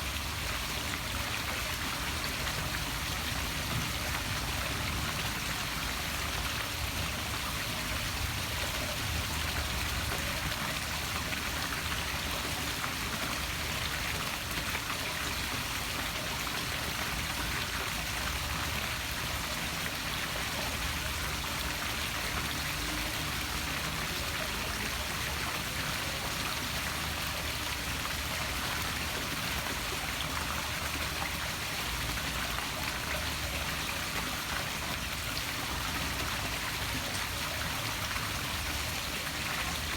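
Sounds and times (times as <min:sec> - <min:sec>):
waterfall splashing into pool: 0:00.0 - 0:39.9.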